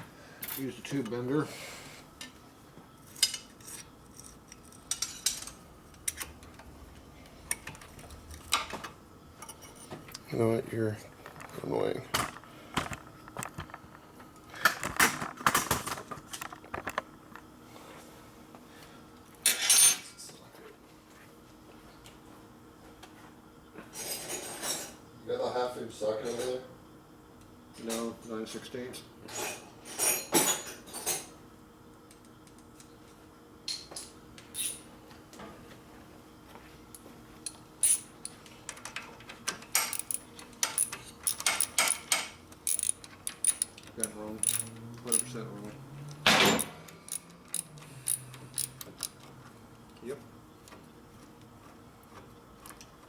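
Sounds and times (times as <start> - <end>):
metal hand tools clinking: 39.8 - 45.4.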